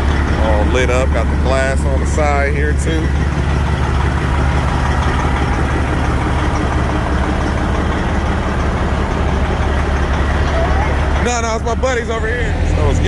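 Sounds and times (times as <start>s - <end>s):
truck diesel engine idling: 0.0s - 13.0s.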